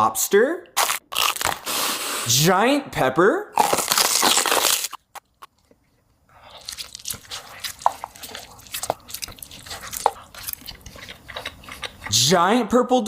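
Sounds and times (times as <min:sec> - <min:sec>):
crunchy biting and chewing: 0:00.8 - 0:02.0, 0:03.6 - 0:12.2
wet mouth sounds: 0:03.6 - 0:12.2.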